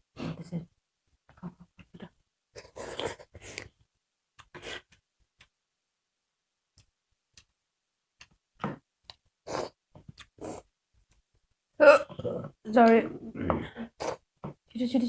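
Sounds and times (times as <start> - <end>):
slurping and chewing: 2.6 - 3.7, 9.1 - 10.7, 13.4 - 14.3.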